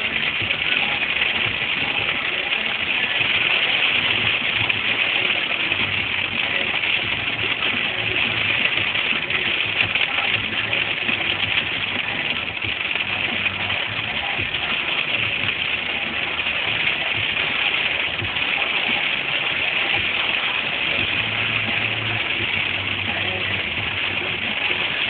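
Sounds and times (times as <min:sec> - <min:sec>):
hail clattering: 0:00.0 - 0:25.0.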